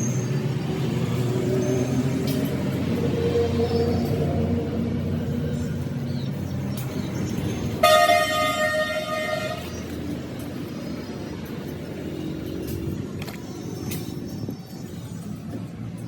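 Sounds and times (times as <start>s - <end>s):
low rumble of traffic: 0.0s - 16.0s
vehicle horn honking: 7.8s - 9.7s.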